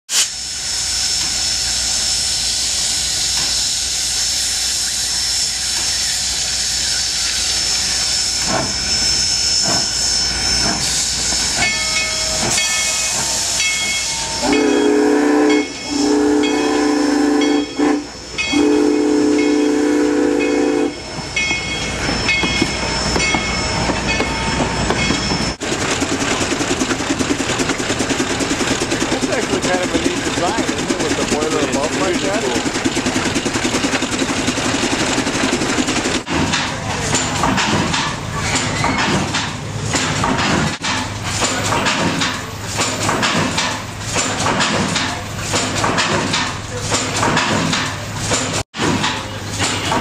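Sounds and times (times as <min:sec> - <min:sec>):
steam hissing: 0:00.1 - 0:48.6
steam whistle blasts: 0:13.2 - 0:21.4
rapid mechanical beat: 0:25.8 - 0:36.3.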